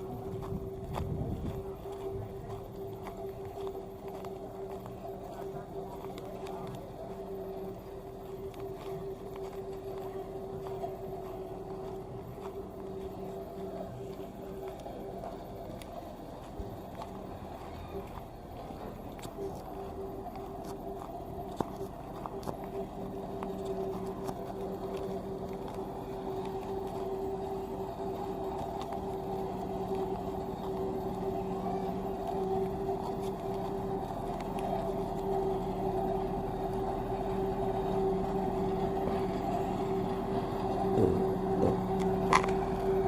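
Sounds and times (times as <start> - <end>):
road roller engine humming: 0.0 - 43.0.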